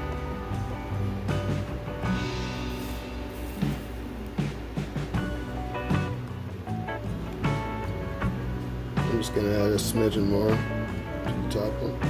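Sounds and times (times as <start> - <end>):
instrumental music with bass line: 0.0 - 12.0.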